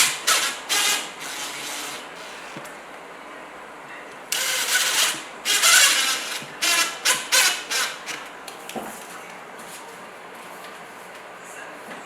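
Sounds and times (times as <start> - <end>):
mechanical rattling bursts: 0.0 - 2.6, 4.4 - 8.2.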